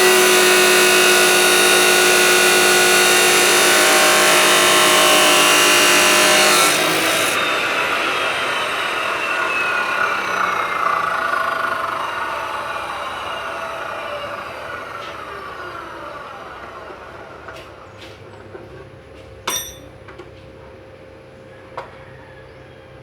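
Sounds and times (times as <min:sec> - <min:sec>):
grinder motor spinning down: 0:00.0 - 0:17.9
ringing metallic clink: 0:19.5 - 0:19.9.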